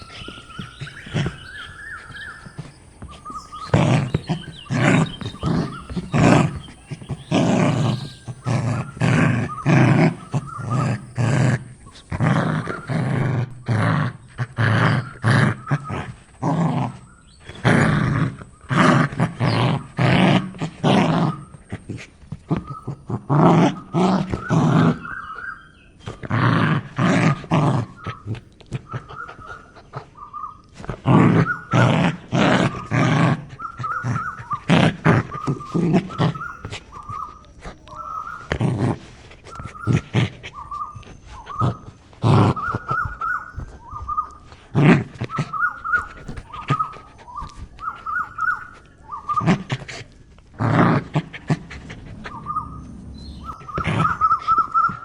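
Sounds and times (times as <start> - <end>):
dog whining: 0.0 - 25.4, 26.2 - 55.0
dog barking: 27.6 - 38.6, 39.5 - 44.3, 45.3 - 48.8, 53.4 - 55.0.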